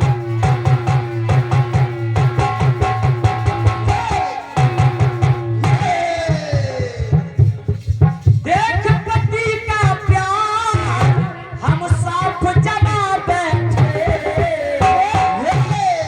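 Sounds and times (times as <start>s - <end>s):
hand drum beat: 0.0s - 16.0s
rattling percussion: 0.0s - 16.0s.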